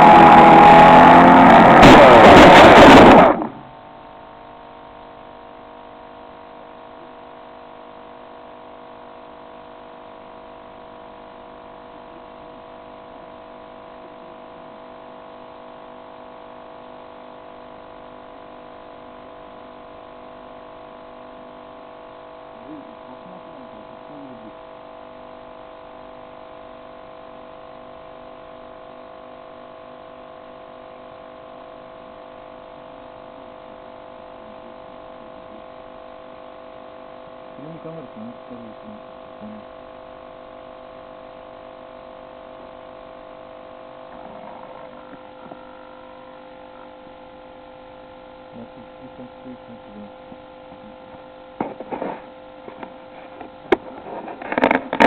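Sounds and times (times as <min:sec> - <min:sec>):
electrical hum: 0:00.0 - 0:55.0
faint voice-like sounds: 0:22.6 - 0:24.6, 0:37.6 - 0:39.7, 0:48.5 - 0:51.1.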